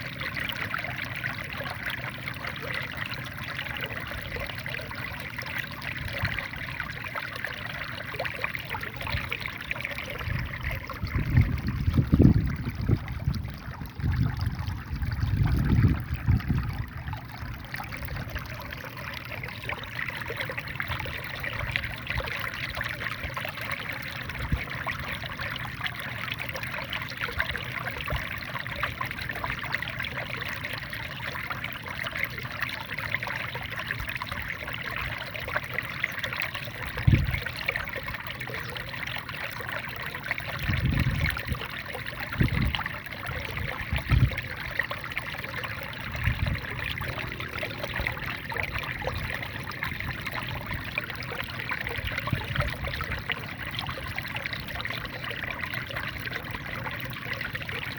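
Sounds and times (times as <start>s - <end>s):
wind rumble on microphone: 10.1s - 18.6s, 24.3s - 25.3s, 36.8s - 37.8s, 40.4s - 44.9s, 46.0s - 51.1s, 51.8s - 55.0s.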